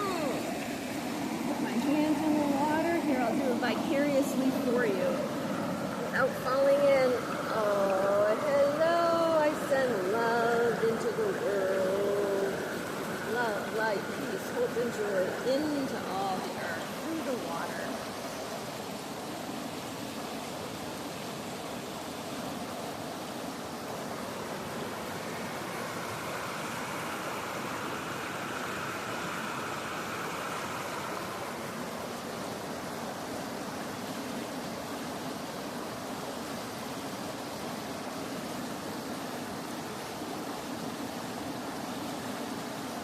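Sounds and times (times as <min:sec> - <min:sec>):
river water rushing: 0:00.0 - 0:43.0.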